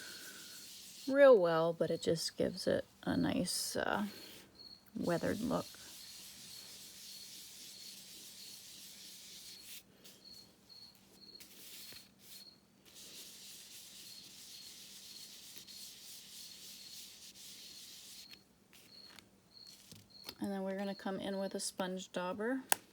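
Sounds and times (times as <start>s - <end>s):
brush rubbing on cardstock: 0.0s - 1.5s, 5.0s - 19.9s.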